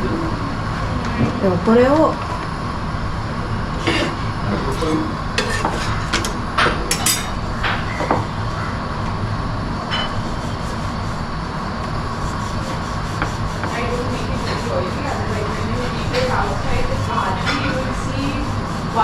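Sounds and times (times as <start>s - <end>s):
faint hum: 0.0s - 19.0s
low kitchen rumble: 0.0s - 19.0s
utensils and cookware clinking: 4.7s - 8.2s, 9.9s - 10.3s, 13.8s - 18.4s.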